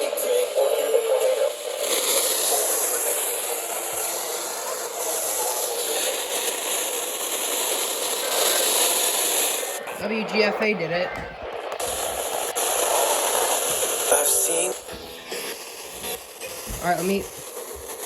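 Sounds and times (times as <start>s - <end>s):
radio static hiss: 0.0s - 18.0s.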